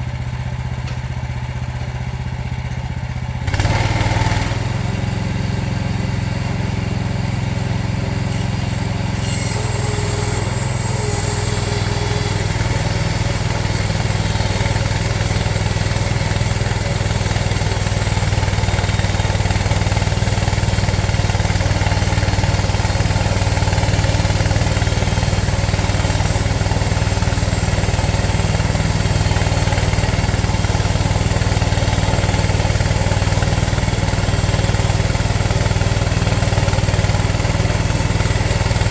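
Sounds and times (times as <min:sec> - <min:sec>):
small gas engine running: 0:00.0 - 0:38.9
saw cutting hiss: 0:08.0 - 0:38.9.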